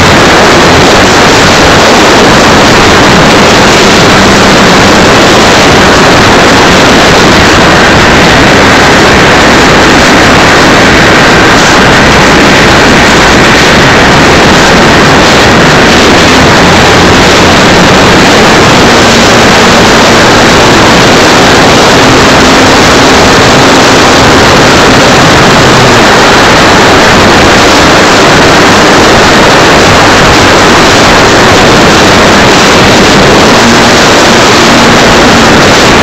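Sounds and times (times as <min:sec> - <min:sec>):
engine running: 0:00.0 - 0:36.0
wind buffeting microphone: 0:00.0 - 0:36.0.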